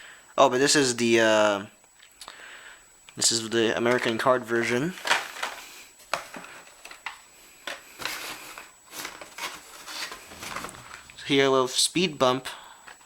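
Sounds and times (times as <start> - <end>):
plastic blister packs crinkling: 3.8 - 11.4.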